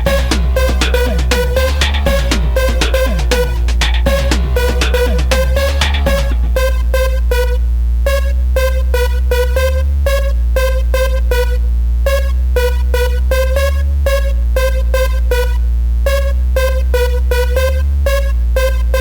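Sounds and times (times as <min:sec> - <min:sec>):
instrumental hip-hop beat: 0:00.0 - 0:07.5
synth melody: 0:00.0 - 0:07.6
deep bass line: 0:00.0 - 0:19.0.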